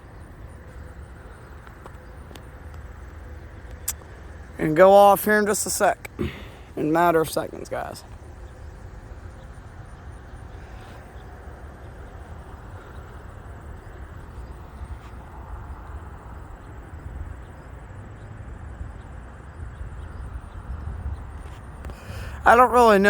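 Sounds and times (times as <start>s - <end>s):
distant road traffic: 0.0s - 23.0s
wind rumble on microphone: 8.1s - 22.5s.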